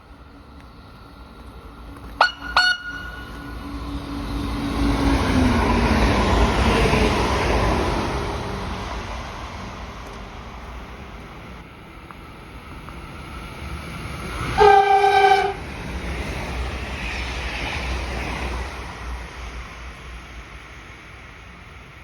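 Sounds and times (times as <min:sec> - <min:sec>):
train passing: 0:00.0 - 0:22.0
train horn toots: 0:02.2 - 0:03.8, 0:14.5 - 0:15.6.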